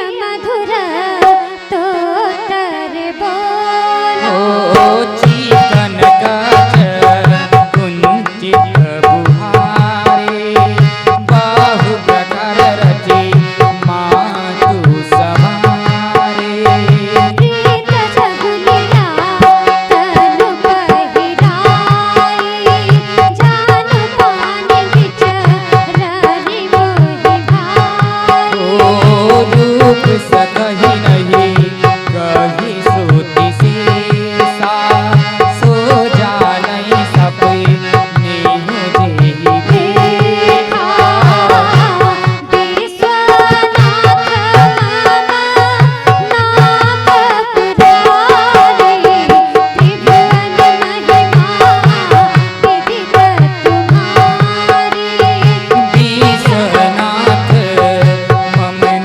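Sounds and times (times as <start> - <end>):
hand drums playing fast rhythm: 4.7 - 59.0.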